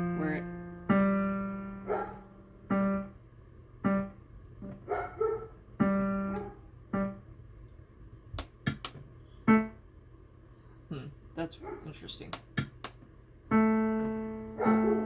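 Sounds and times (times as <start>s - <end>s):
sharp clicks: 8.4s - 9.0s, 12.3s - 13.0s
digital piano single notes: 13.5s - 15.0s.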